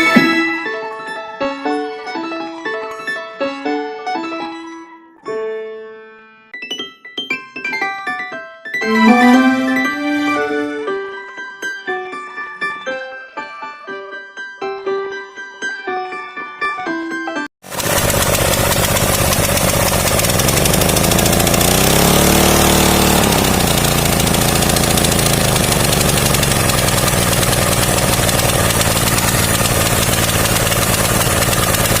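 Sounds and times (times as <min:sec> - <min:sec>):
small petrol engine running: 0:17.6 - 0:32.0.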